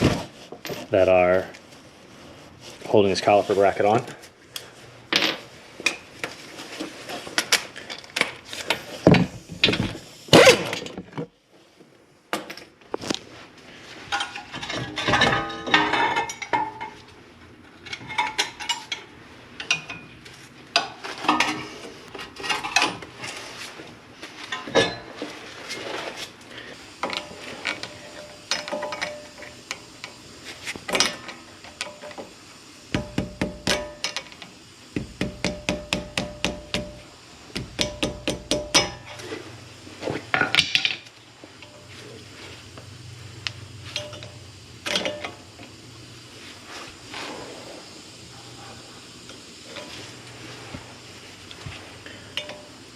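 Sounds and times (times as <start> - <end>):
tools and metal parts clinking: 14.1 - 17.0, 17.8 - 20.1, 24.5 - 25.2, 27.0 - 29.8.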